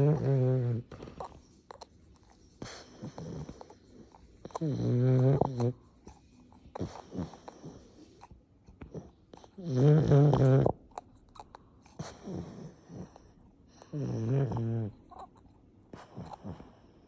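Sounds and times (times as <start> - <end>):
dog snoring: 0.0 - 17.0.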